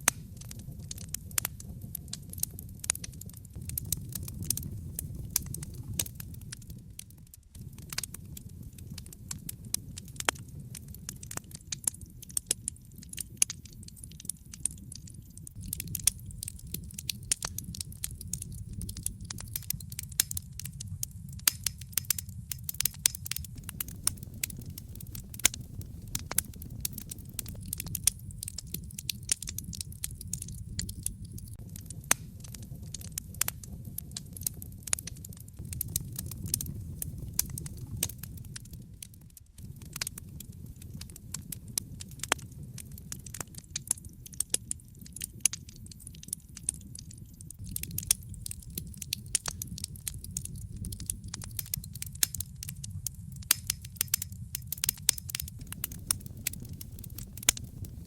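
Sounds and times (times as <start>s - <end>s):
fireplace fire crackling: 0.0s - 58.0s
low rumble: 22.4s - 29.0s, 55.5s - 58.0s.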